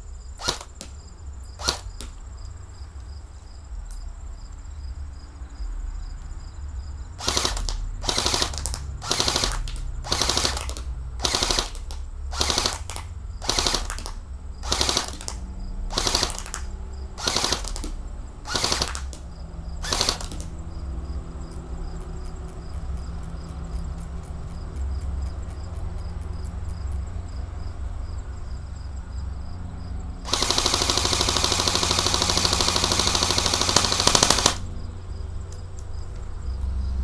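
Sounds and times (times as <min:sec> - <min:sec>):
airsoft rifle firing bursts: 0:00.4 - 0:00.8, 0:01.6 - 0:02.1, 0:07.2 - 0:19.2, 0:19.8 - 0:20.5, 0:30.3 - 0:34.7.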